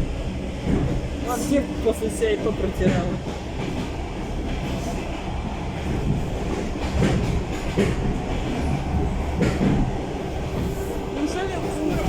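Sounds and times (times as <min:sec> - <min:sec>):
train rumbling: 0:00.0 - 0:12.0
wheels clacking over rail joints: 0:05.8 - 0:12.0.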